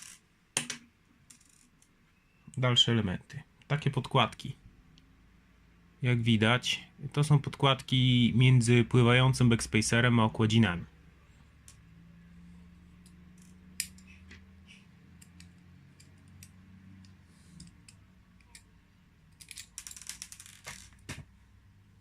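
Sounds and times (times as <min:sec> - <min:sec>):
small metal parts clicking on table: 0:13.0 - 0:14.2, 0:19.3 - 0:21.0.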